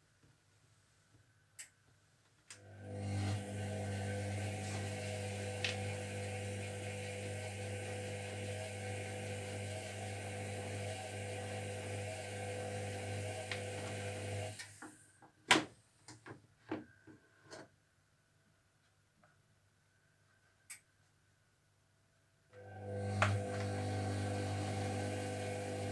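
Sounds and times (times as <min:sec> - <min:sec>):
washing machine hum: 0:02.6 - 0:14.8, 0:22.6 - 0:25.9.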